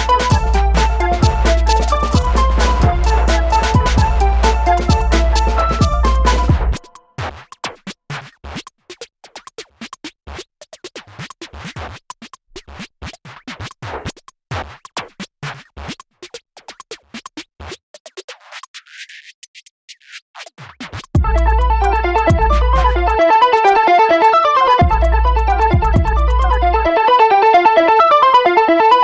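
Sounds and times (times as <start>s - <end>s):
electronic music: 0.0s - 7.1s, 21.2s - 29.0s.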